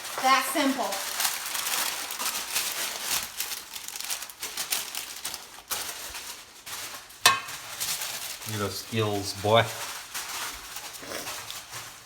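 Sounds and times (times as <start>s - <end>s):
batter stirred in bowl: 4.2s - 12.0s.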